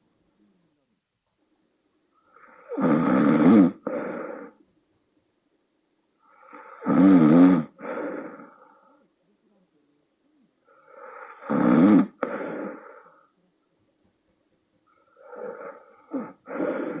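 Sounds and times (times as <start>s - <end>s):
woman snoring: 2.2s - 4.6s, 6.2s - 8.6s, 10.8s - 13.2s, 15.2s - 17.0s.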